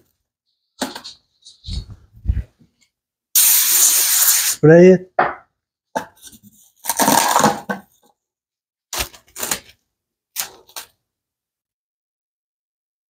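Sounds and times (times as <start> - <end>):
cooking spray hiss: 3.4 - 4.6.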